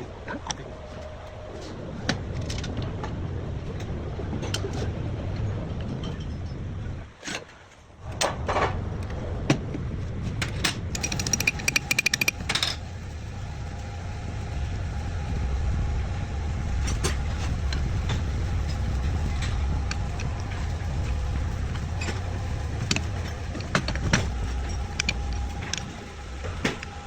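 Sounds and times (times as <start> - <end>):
engines rumbling: 8.8 - 27.0
rattling metallic clicks: 10.9 - 12.7
metal tools clinking: 11.0 - 12.4.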